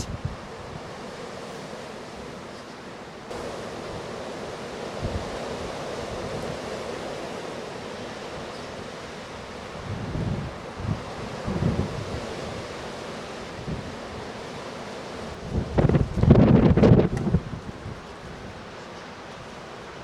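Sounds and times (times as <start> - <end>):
wind buffeting microphone: 0.0 - 0.9, 3.3 - 7.1, 9.5 - 14.3, 15.3 - 18.7
strong wind rushing: 3.3 - 7.1, 9.8 - 12.7, 15.3 - 18.0.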